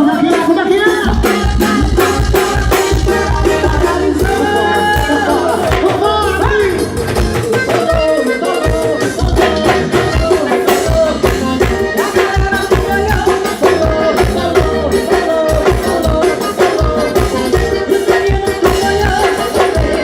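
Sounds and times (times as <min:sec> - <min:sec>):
live band playing: 0:00.0 - 0:20.0
steady drum beat: 0:00.0 - 0:20.0.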